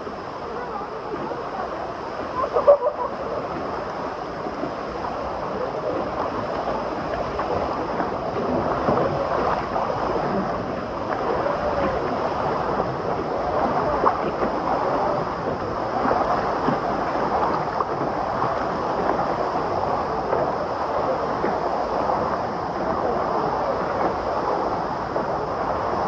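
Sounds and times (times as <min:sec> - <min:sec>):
water surging and splashing: 0:00.0 - 0:26.0
voices of bathers: 0:00.4 - 0:03.9.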